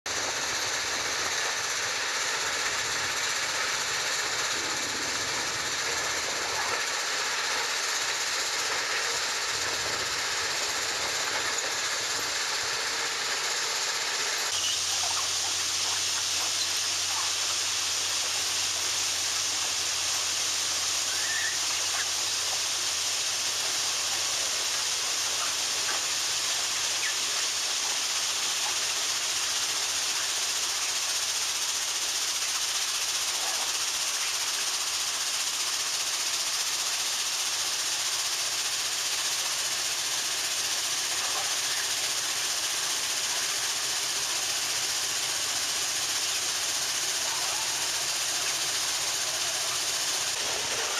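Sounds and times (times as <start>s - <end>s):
steady low hum: 0.1s - 31.9s
railway track machinery running: 0.1s - 50.9s.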